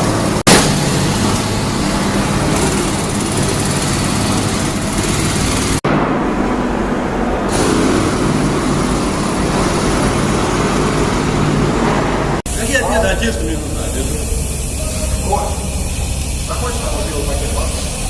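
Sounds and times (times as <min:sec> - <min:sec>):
repair machinery humming: 0:00.0 - 0:18.0
loud hiss: 0:12.5 - 0:18.0.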